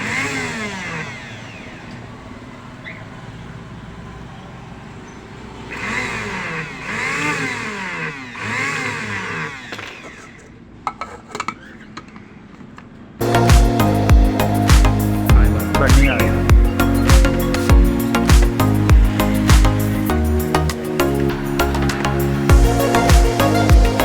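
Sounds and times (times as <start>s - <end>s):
coffee grinder motor whining: 0.0s - 2.4s, 5.7s - 10.6s.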